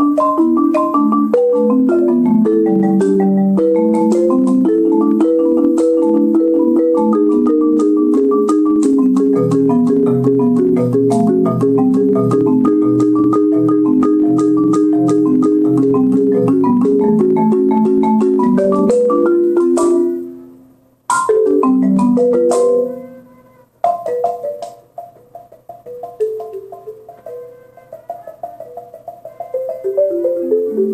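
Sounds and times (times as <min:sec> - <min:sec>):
marimba played with mallets: 0:00.0 - 0:30.9.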